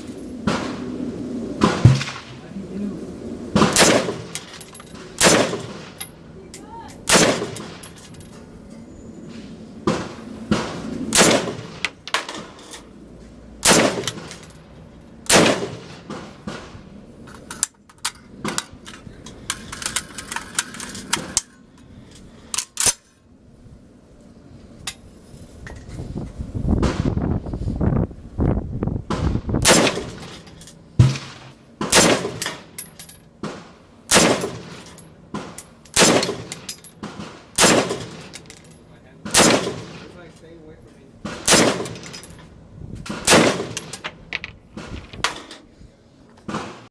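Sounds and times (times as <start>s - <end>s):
rifle shots echoing: 1.6s - 2.4s, 3.5s - 6.0s, 7.0s - 7.9s, 9.9s - 12.5s, 13.6s - 14.4s, 15.3s - 16.7s, 29.6s - 30.4s, 31.0s - 32.8s, 33.4s - 38.3s, 39.2s - 40.2s, 41.2s - 42.3s, 43.1s - 44.0s.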